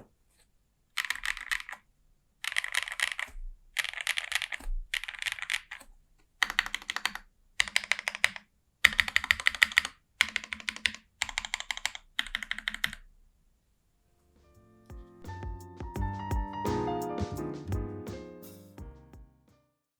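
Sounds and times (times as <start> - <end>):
mechanical keyboard typing: 1.0 - 1.8, 2.4 - 13.1.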